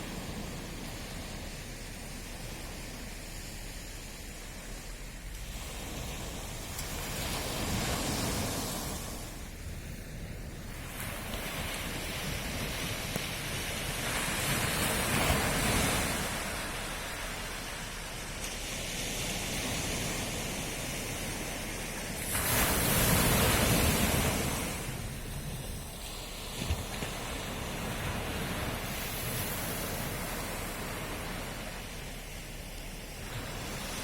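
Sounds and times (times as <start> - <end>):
sea waves breaking on shore: 0.0 - 34.0.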